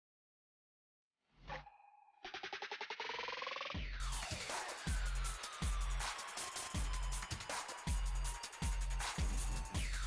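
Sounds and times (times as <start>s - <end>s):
heavy bass beat: 3.8s - 10.0s
busy high percussion: 4.0s - 10.0s
electronic dance music: 4.0s - 10.0s.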